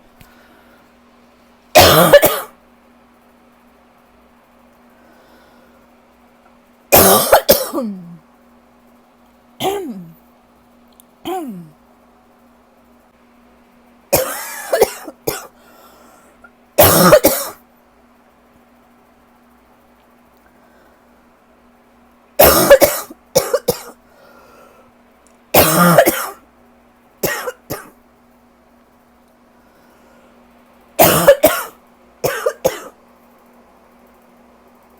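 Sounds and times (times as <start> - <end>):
person coughing: 1.8 - 2.5, 6.9 - 8.2, 9.6 - 10.2, 11.3 - 11.8, 14.2 - 15.6, 16.8 - 17.6, 22.4 - 24.0, 25.6 - 26.4, 27.2 - 28.0, 31.0 - 33.0.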